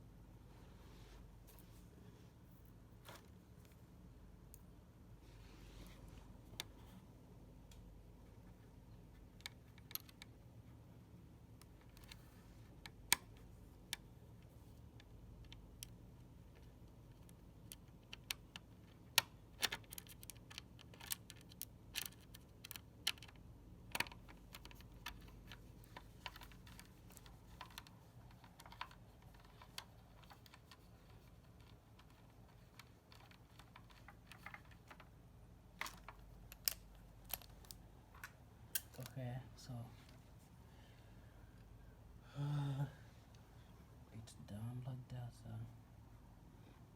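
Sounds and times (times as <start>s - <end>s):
plastic and metal parts clicking: 9.3s - 10.4s, 15.0s - 35.2s, 35.8s - 39.0s.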